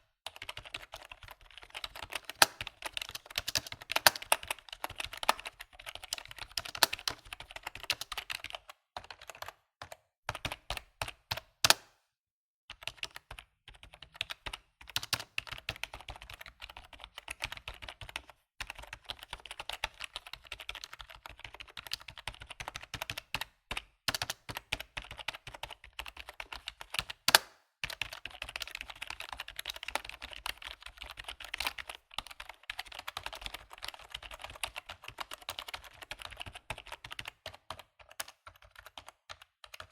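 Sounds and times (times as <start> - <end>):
keyboard key clicks: 2.2 - 5.6, 6.5 - 7.2, 11.6 - 12.0, 27.0 - 27.6.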